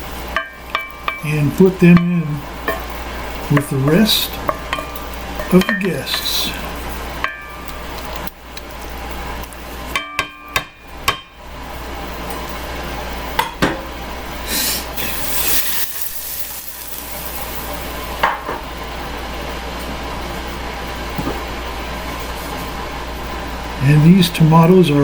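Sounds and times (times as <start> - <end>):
tomatoes hissing in skillet: 0.0 - 9.8, 14.3 - 19.0
steady low hum: 0.0 - 25.0.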